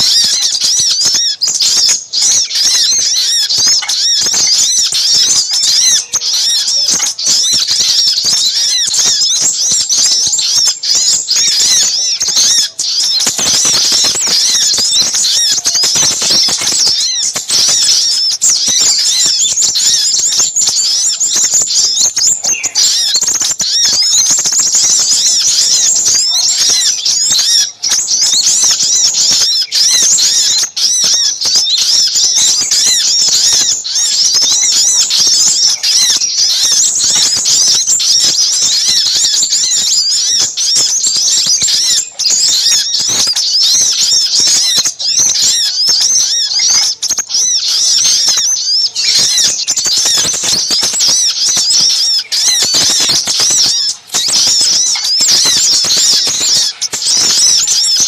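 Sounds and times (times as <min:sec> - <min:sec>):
small birds chirping and trilling: 0:00.0 - 0:58.0.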